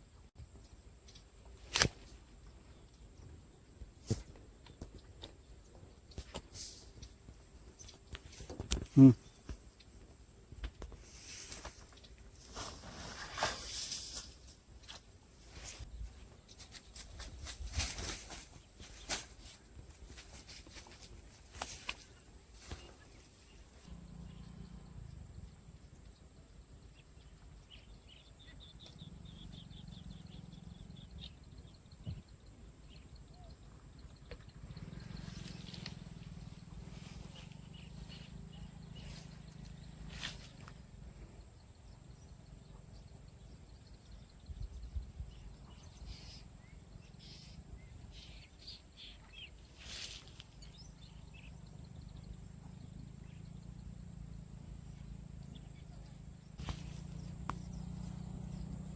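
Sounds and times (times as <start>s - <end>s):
low hum: 23.5s - 32.5s, 33.4s - 48.1s.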